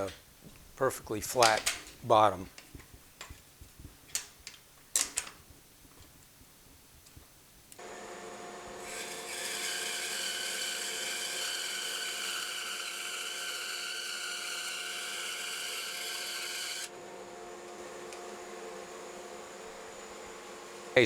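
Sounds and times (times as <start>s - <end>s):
bandsaw humming: 7.8s - 20.6s.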